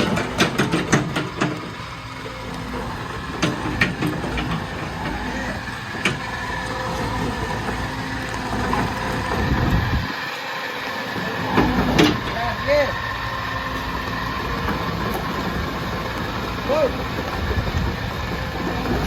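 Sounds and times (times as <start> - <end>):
excavator diesel engine running: 0.0 - 19.0.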